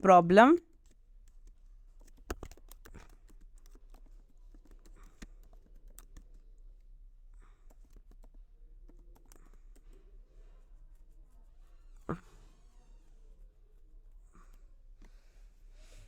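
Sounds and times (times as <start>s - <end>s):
keyboard typing clicks: 0.8s - 6.4s.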